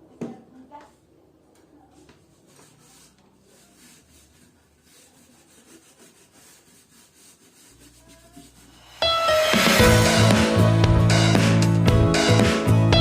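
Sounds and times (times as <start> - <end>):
rapid rubbing strokes: 2.3 - 10.6.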